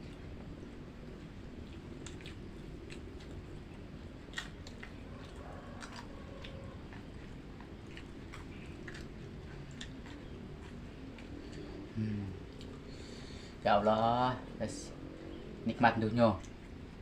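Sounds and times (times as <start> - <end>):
person chewing food: 0.0 - 13.2.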